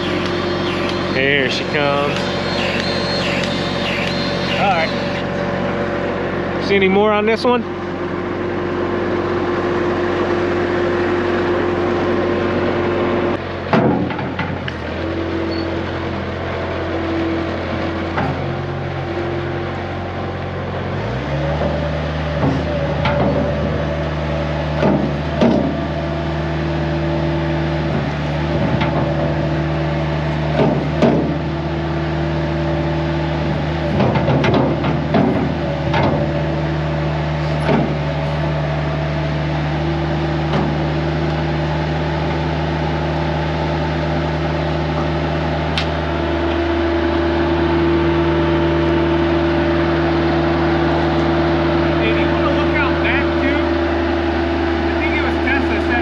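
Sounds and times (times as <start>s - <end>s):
diesel engine running: 0.0s - 56.0s
clanks and knocks: 13.7s - 14.8s, 22.4s - 23.6s, 24.8s - 25.8s, 27.9s - 29.4s, 30.5s - 31.4s, 33.9s - 36.3s, 37.6s - 38.0s.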